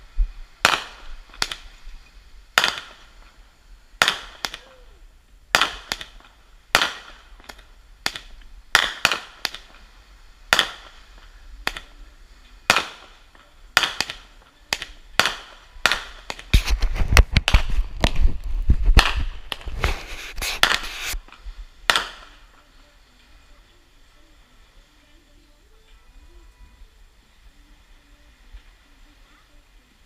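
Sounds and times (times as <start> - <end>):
fireworks bangs: 0.0 - 23.8.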